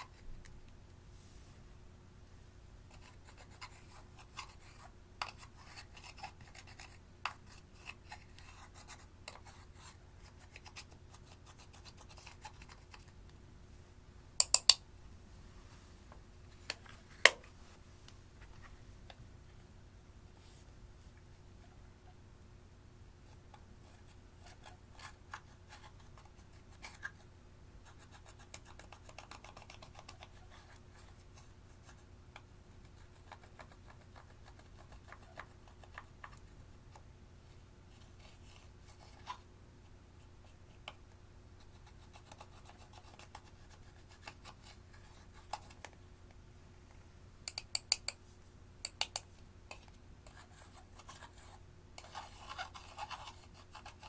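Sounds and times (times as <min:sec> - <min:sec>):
scratching and scraping: 0:49.7 - 0:54.0.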